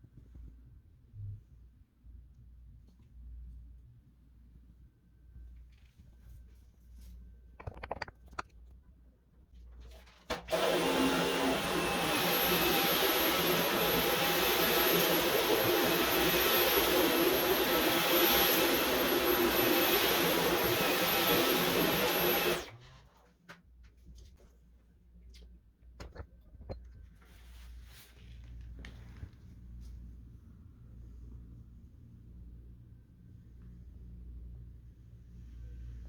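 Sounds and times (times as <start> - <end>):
vacuum cleaner whine: 10.4 - 22.8.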